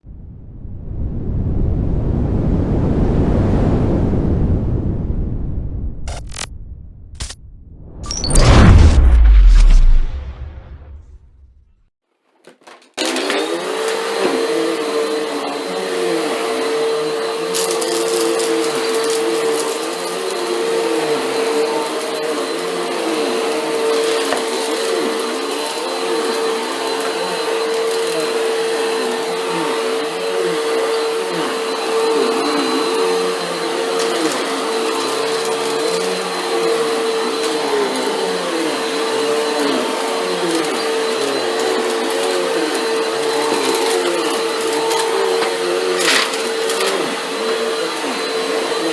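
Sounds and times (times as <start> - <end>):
vacuum cleaner running on carpet: 13.0 - 48.9
grit crackling in vacuum: 16.6 - 22.5, 30.3 - 47.6.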